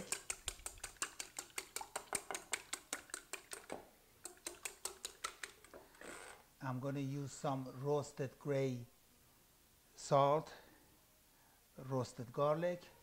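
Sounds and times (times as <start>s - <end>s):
utensil beating egg in bowl: 0.0s - 5.7s.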